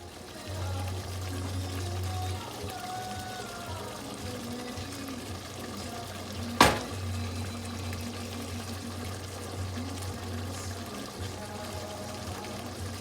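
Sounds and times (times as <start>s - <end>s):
curry sizzling and bubbling: 0.0s - 13.0s
sharp knock: 6.6s - 7.0s.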